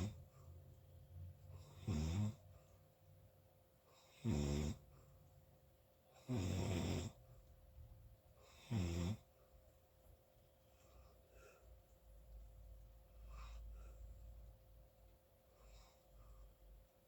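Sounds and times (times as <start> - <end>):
quiet breathing: 0.0 - 17.0
person snoring: 1.6 - 2.4, 4.1 - 4.8, 6.2 - 7.2, 8.5 - 9.2.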